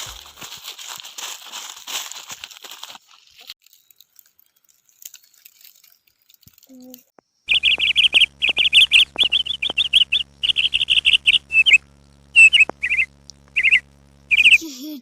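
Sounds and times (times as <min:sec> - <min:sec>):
songbird trilling: 0:07.5 - 0:14.6.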